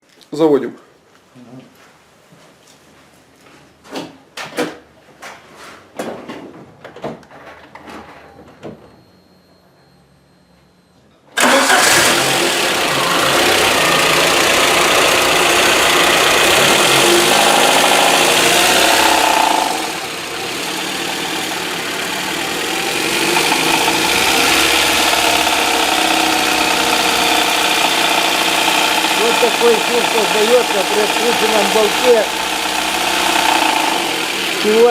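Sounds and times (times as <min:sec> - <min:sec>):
car engine starting and knocking: 0:11.4 - 0:34.9.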